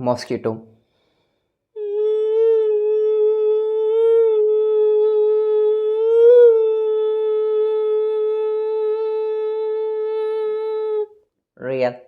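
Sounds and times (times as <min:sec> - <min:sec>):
vocal mosquito imitation hum: 0:01.8 - 0:11.2.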